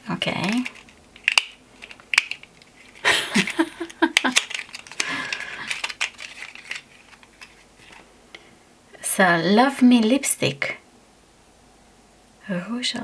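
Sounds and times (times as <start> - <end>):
packaging crinkling: 0.0 - 8.1
box clicks: 0.1 - 8.0.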